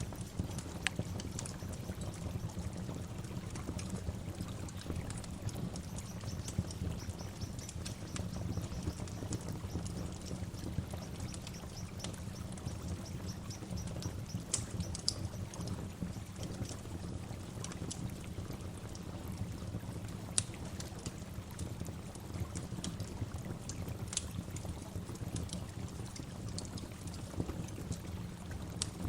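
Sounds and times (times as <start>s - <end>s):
small birds chirping: 0.2s - 2.6s, 5.1s - 15.8s.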